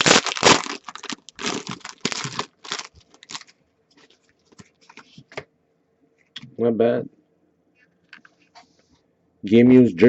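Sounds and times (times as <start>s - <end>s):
card pack wrapper crinkling: 0.0s - 3.6s
cards being handled: 1.6s - 5.4s.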